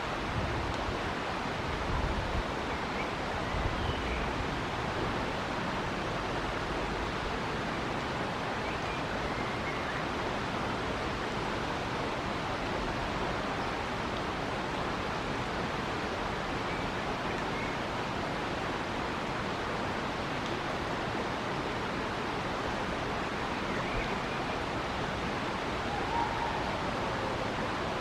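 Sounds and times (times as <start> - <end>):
wind rumble on microphone: 0.0 - 9.2
river water flowing: 0.0 - 28.0.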